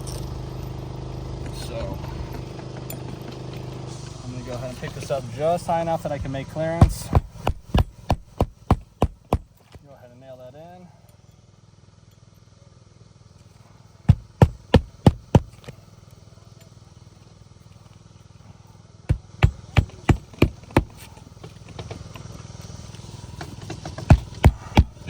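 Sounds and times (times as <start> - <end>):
hammer driving nails: 6.2 - 9.8, 14.1 - 15.8, 19.1 - 22.3, 23.4 - 25.0.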